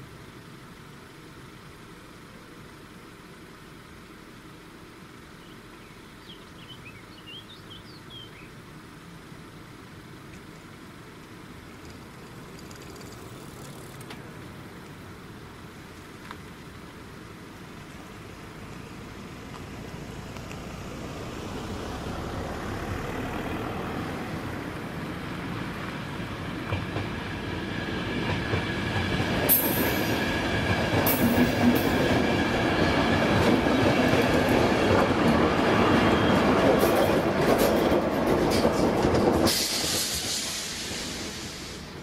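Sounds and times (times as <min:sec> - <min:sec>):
train rumble: 0:09.6 - 0:42.0
train wheel clatter: 0:11.7 - 0:14.2, 0:26.4 - 0:42.0.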